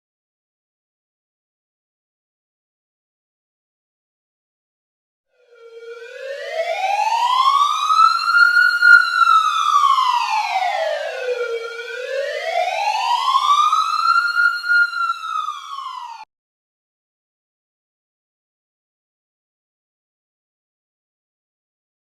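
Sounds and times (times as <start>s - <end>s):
emergency siren wailing: 5.4s - 16.3s.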